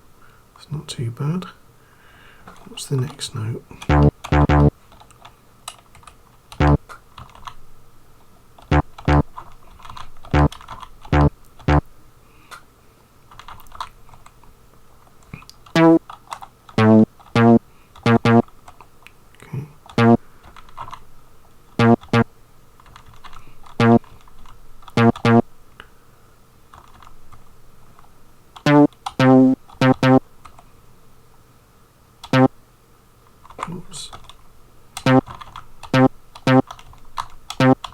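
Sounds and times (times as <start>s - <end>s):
short bass notes: 3.9s - 4.7s, 6.6s - 6.8s, 8.7s - 9.2s, 11.2s - 11.8s, 15.8s - 16.0s, 16.8s - 18.4s, 20.0s - 20.2s, 21.8s - 22.2s, 23.8s - 24.0s, 25.0s - 25.4s, 28.7s - 30.2s, 35.1s - 35.3s, 36.0s - 36.6s, 37.6s - 37.8s
computer keyboard typing: 3.9s - 7.6s, 8.6s - 11.8s, 13.3s - 14.2s, 15.6s - 18.8s, 19.9s - 21.0s, 21.8s - 22.2s, 22.8s - 25.4s, 26.7s - 27.1s, 28.6s - 30.6s, 32.2s - 32.5s, 35.0s - 37.9s.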